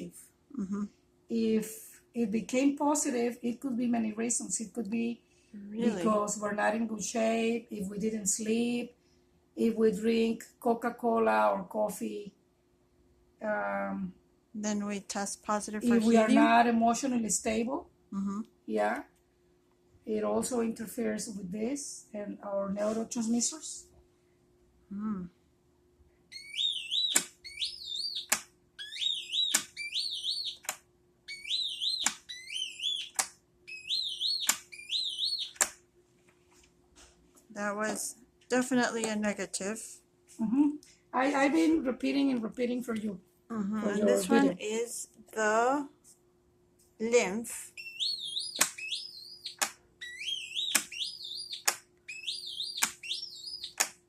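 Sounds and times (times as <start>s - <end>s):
high-pitched rising oscillator tones: 15.8s - 16.6s, 31.3s - 35.6s.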